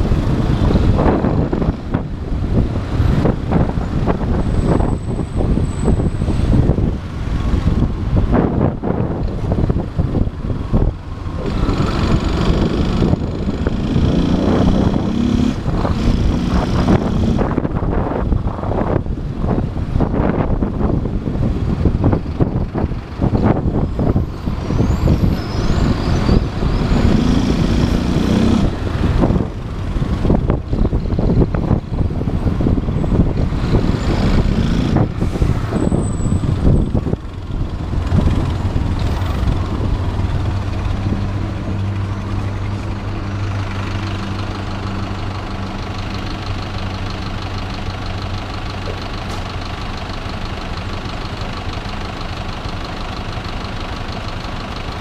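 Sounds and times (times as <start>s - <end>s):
wind buffeting microphone: 0.0s - 45.0s
motorcycle riding: 0.0s - 55.0s
motorcycle idling: 44.2s - 55.0s.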